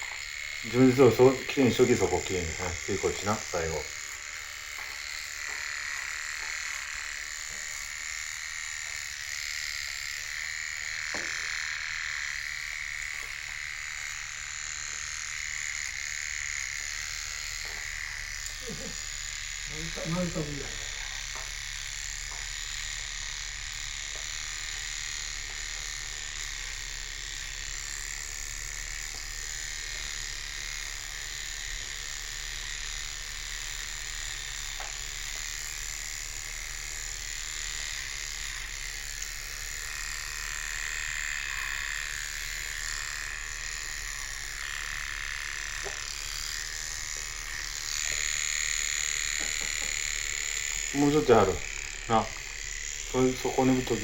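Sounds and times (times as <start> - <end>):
grooming tool motor buzzing: 0.0 - 54.0.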